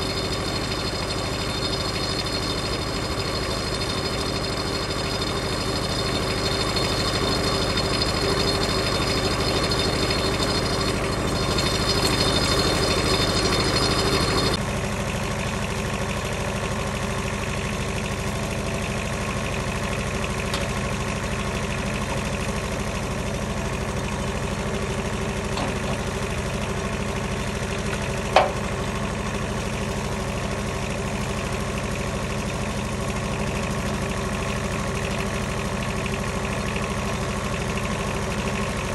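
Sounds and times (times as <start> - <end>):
high saw whine: 0.0 - 14.6
sawmill engine running: 0.0 - 38.9.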